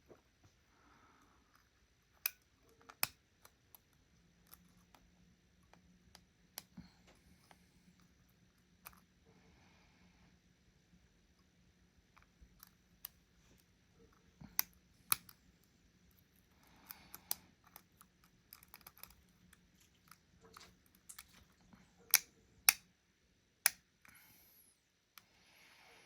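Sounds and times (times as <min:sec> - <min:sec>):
lock pick ticking and scraping: 0:16.8 - 0:21.4.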